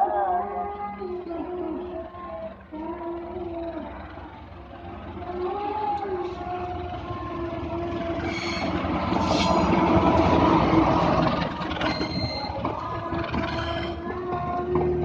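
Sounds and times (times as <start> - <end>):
passenger train passing: 0.0 - 15.0.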